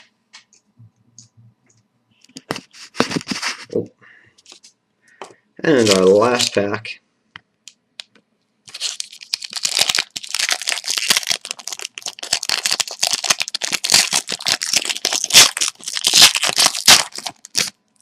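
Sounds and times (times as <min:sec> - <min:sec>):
wrapper tearing and crinkling: 0:05.7 - 0:06.6, 0:08.7 - 0:17.8.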